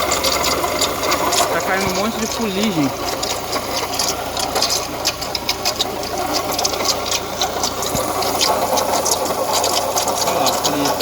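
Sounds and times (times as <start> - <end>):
car engine running: 0.0 - 11.0
water pump rattling: 0.0 - 11.0.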